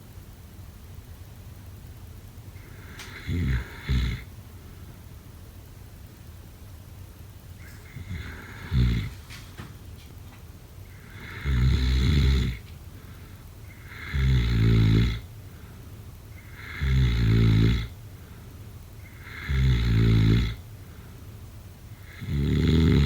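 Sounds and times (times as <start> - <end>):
loud rough snoring: 2.6 - 4.3, 7.6 - 9.2, 10.9 - 12.6, 13.7 - 15.3, 16.4 - 18.0, 19.0 - 20.7, 22.0 - 23.0.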